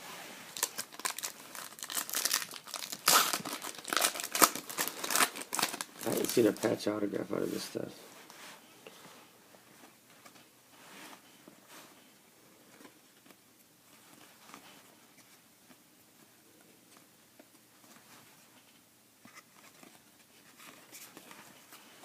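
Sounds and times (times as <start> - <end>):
trading cards rustling and clicking: 0.6 - 6.8.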